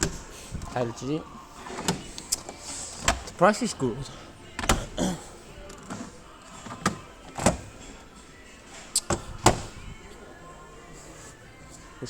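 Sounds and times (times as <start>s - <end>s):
faint background music: 0.0s - 12.0s.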